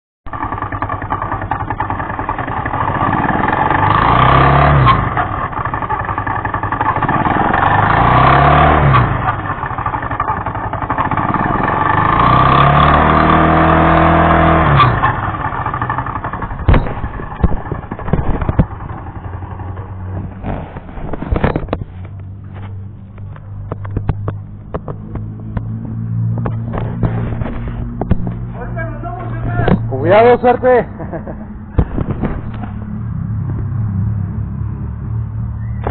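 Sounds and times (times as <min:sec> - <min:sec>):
motorcycle engine revving and idling: 0:00.3 - 0:35.9
sharp engine knocks: 0:15.8 - 0:21.9, 0:23.6 - 0:30.0, 0:31.7 - 0:32.9.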